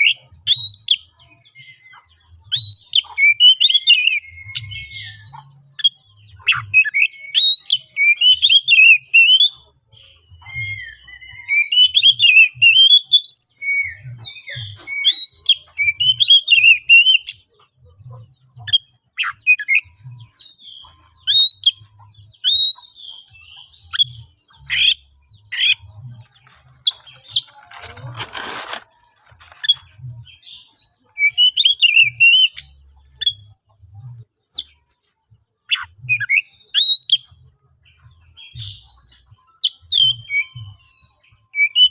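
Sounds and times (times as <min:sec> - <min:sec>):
bird singing whistles and chirps: 0:00.0 - 0:17.4, 0:18.7 - 0:25.9, 0:29.7 - 0:33.5, 0:35.7 - 0:41.9
bird harsh rasp: 0:26.8 - 0:29.9.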